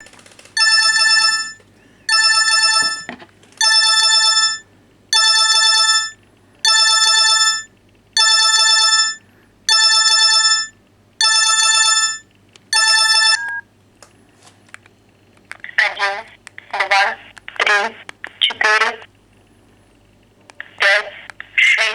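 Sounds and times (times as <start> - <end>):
mobile phone alarm ringing: 0.0 - 13.6.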